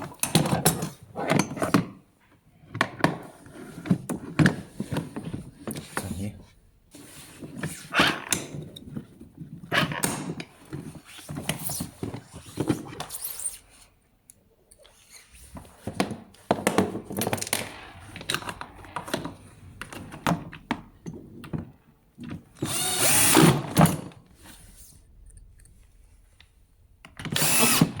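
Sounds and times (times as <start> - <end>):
power drill running: 22.6 - 23.8, 27.3 - 28.0.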